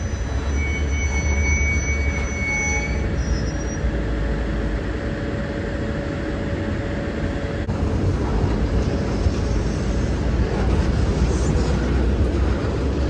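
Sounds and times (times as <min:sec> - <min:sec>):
faint squeal-like tone: 0:00.0 - 0:03.9
diesel locomotive rumbling: 0:00.0 - 0:13.0.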